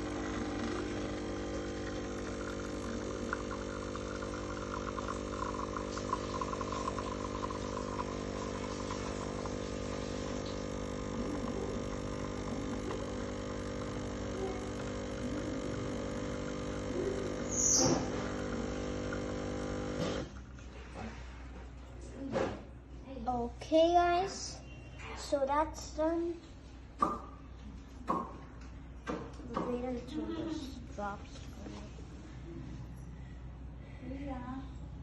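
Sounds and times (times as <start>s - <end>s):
espresso machine pump humming: 0.0s - 20.8s.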